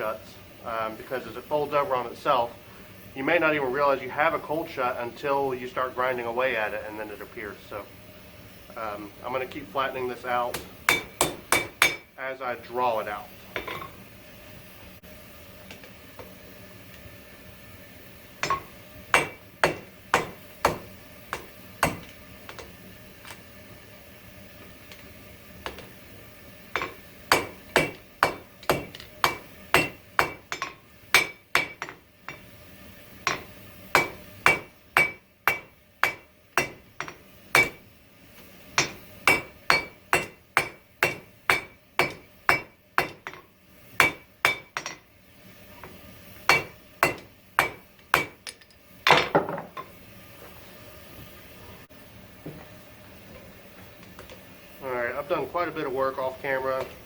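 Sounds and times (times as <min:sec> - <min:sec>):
hammer striking steel on anvil: 0:10.5 - 0:12.1, 0:13.6 - 0:14.0, 0:18.4 - 0:22.7, 0:26.7 - 0:32.6, 0:33.2 - 0:37.8, 0:38.8 - 0:45.0, 0:46.5 - 0:49.9.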